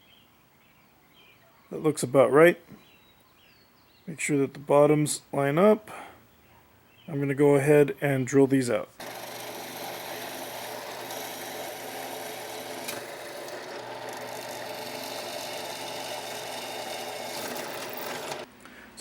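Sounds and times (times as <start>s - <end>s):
electric drill boring through steel: 9.0s - 18.5s.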